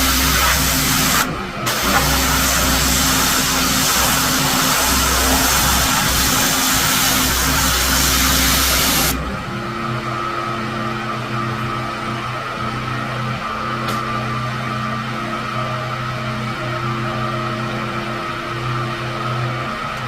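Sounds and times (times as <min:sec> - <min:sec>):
pressure washer water jet hissing: 0:00.0 - 0:09.5
pressure washer motor humming: 0:00.0 - 0:20.0.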